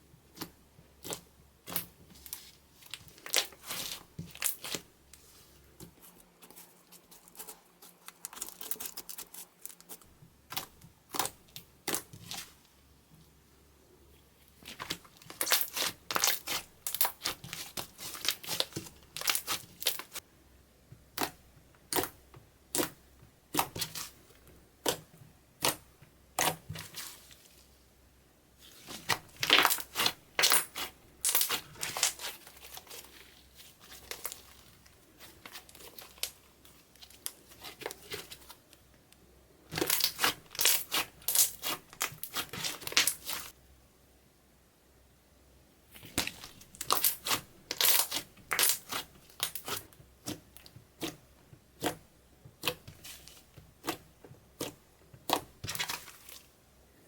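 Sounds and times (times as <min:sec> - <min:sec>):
slime clicking and crackling: 0:07.2 - 0:12.5, 0:14.6 - 0:20.2, 0:21.1 - 0:24.1, 0:24.8 - 0:27.1, 0:28.8 - 0:33.2, 0:39.7 - 0:43.5, 0:46.0 - 0:52.0, 0:52.6 - 0:56.4.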